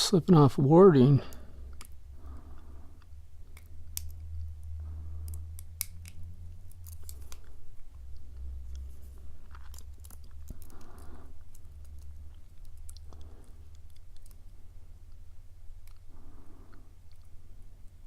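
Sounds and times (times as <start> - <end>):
low hum: 0.2 - 18.0
lock pick clicking and scraping: 5.3 - 7.5.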